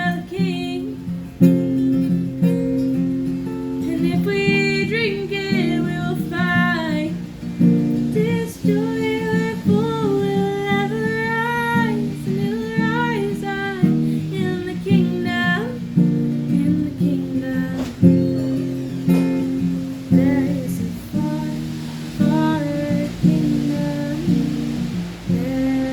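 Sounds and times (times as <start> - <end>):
person singing: 0.0 - 1.1, 3.8 - 7.4, 8.0 - 18.1, 20.0 - 25.9
acoustic guitar strumming: 0.0 - 25.9.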